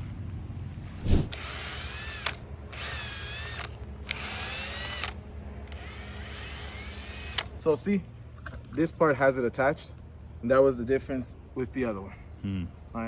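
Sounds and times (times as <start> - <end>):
power drill motor whine: 1.3 - 7.5.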